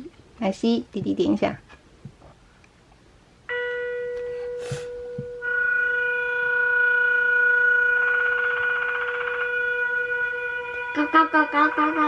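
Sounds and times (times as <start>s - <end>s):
electronic bell-like note: 3.5s - 12.0s.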